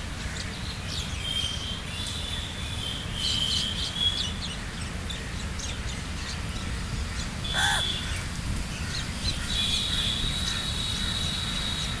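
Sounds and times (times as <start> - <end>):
crow cawing: 7.5 - 8.2.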